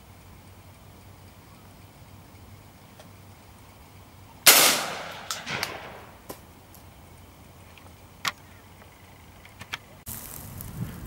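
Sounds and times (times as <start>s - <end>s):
shotgun shot echoing: 4.5s - 6.2s.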